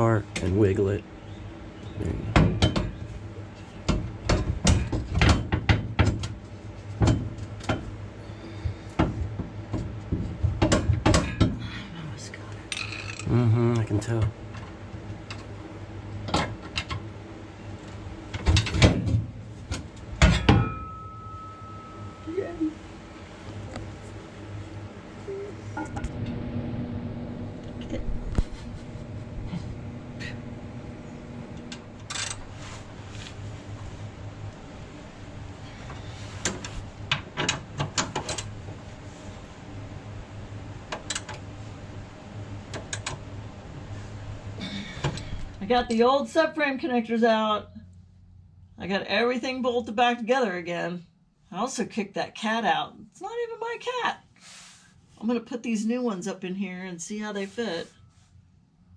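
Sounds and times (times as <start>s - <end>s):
steady low hum: 0.0s - 58.9s
metal clanks and knocks: 18.4s - 21.2s.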